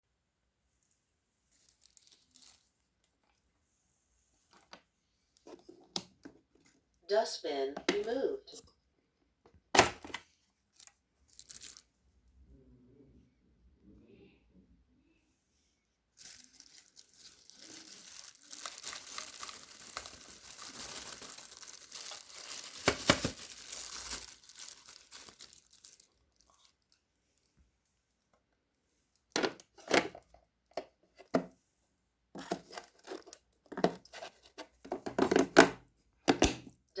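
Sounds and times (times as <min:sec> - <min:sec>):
plastic crinkling and rustling: 0:01.5 - 0:03.4, 0:09.8 - 0:11.9, 0:16.1 - 0:27.6, 0:32.4 - 0:35.5.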